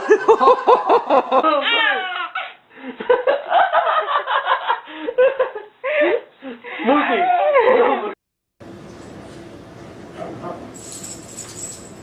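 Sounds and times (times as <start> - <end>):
child laughing: 0.0 - 2.6.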